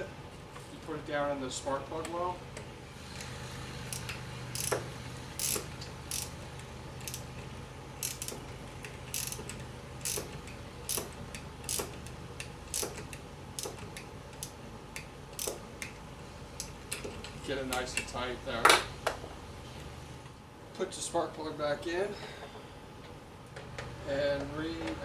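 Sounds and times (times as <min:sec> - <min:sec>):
socket ratchet clicking: 0:03.9 - 0:07.4, 0:08.0 - 0:16.0.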